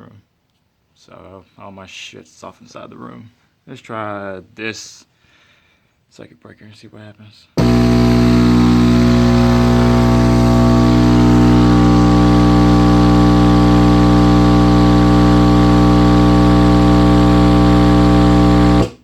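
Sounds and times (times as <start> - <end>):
subwoofer playing deep bass tone: 7.6 - 19.0.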